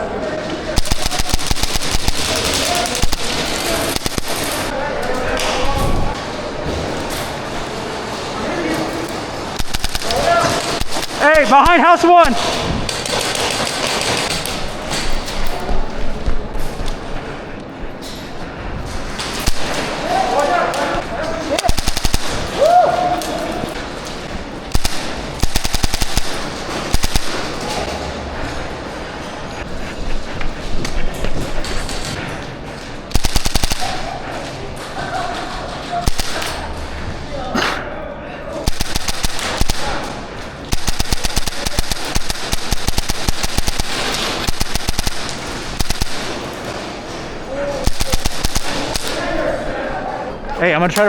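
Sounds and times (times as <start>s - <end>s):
airsoft guns firing bursts: 0.8s - 4.7s, 9.5s - 15.0s, 19.3s - 22.6s, 24.7s - 27.9s, 33.1s - 34.4s, 36.0s - 36.7s, 38.6s - 46.8s, 47.8s - 49.4s.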